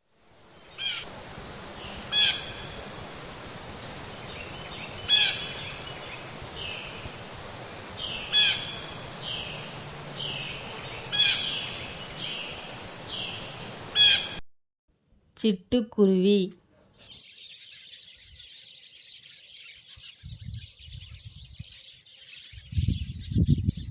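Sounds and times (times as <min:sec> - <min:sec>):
high-pitched insect drone: 0:00.0 - 0:14.4
blue jay harsh calls: 0:00.7 - 0:14.4.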